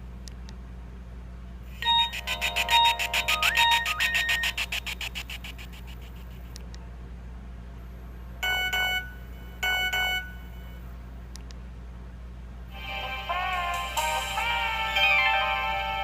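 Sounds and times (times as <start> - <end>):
steady low hum: 0.0 - 16.0
chord-like phone beep: 1.8 - 5.4, 8.4 - 10.7
rhythmic phone ringtone: 1.8 - 5.4, 12.9 - 16.0.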